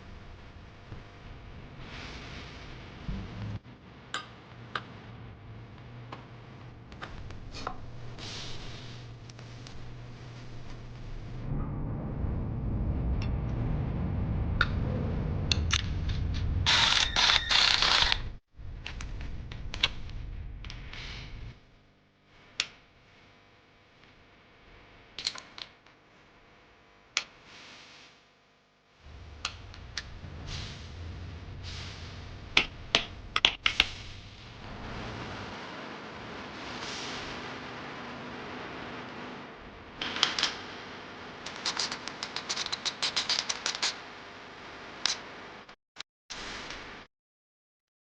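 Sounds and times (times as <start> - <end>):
low hum: 0.0 - 21.6, 29.0 - 40.0.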